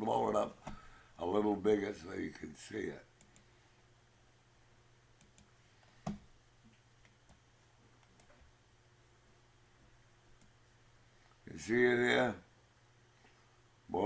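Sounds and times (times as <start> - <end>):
computer mouse clicks: 3.2 - 3.5, 5.2 - 6.2.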